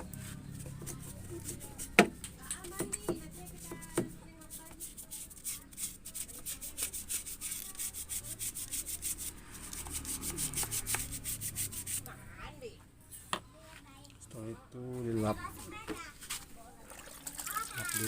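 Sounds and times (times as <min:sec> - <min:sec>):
scrubbing strokes on engine: 0:03.2 - 0:12.2.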